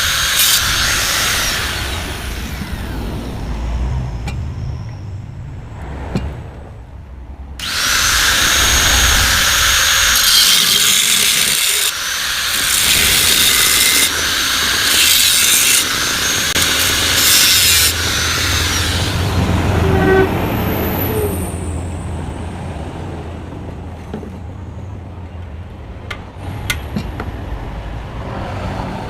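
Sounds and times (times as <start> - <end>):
power tool cutting steel: 0.0 - 3.5, 7.6 - 20.2.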